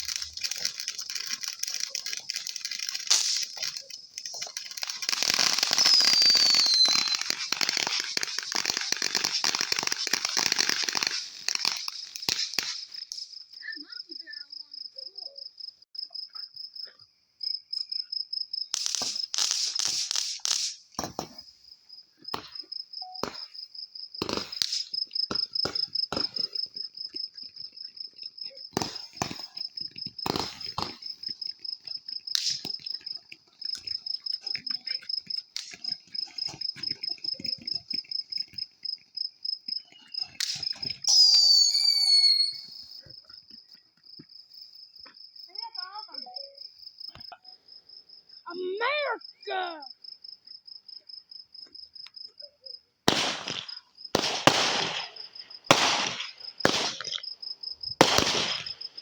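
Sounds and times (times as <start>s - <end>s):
firework whistle and burst: 0.0s - 13.3s, 18.7s - 21.5s, 24.2s - 26.5s, 30.2s - 31.2s, 32.3s - 33.0s, 39.9s - 43.1s, 53.1s - 57.2s, 57.9s - 59.0s
fireworks popping and crackling: 0.0s - 14.0s, 18.7s - 21.6s, 22.3s - 44.3s, 53.0s - 59.0s
crickets chirping: 0.0s - 59.0s.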